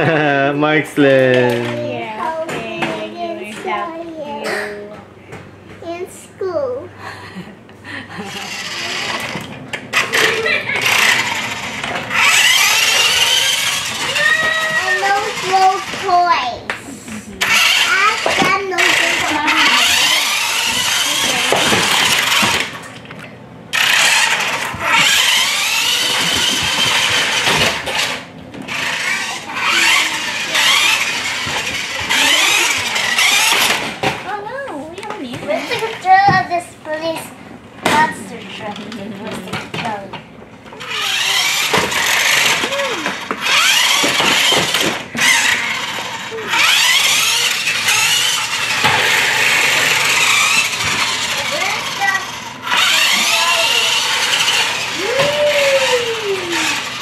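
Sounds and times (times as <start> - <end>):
toy motorcycle motor whine: 1.0 - 3.8, 8.1 - 16.4, 17.4 - 22.8, 23.7 - 34.2, 40.8 - 57.0.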